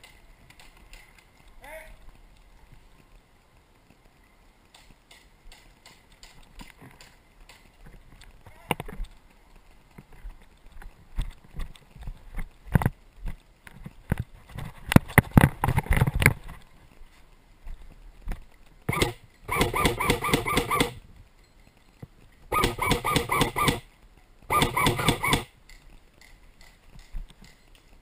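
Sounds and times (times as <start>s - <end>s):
fast mechanical rattle: 18.9s - 21.0s.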